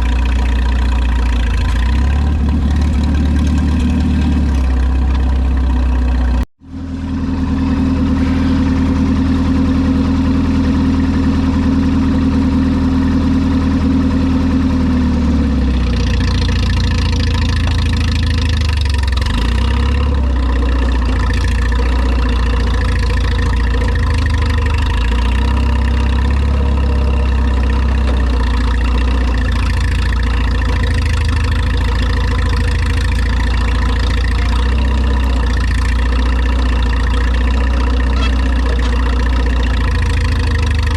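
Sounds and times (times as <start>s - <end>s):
tractor engine idling: 0.0s - 40.9s
strong hum: 1.4s - 18.9s.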